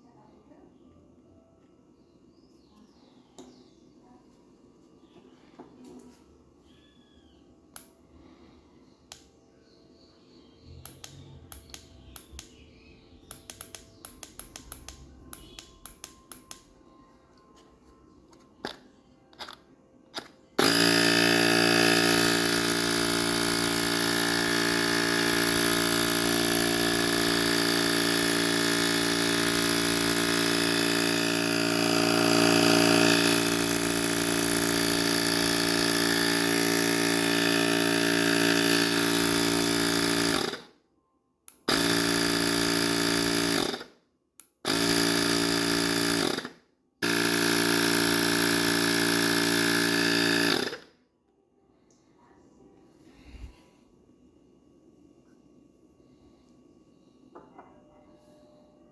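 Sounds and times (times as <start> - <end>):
small handling clicks and taps: 13.3 - 16.7
air compressor humming: 20.2 - 40.6, 41.5 - 43.9, 44.6 - 50.9.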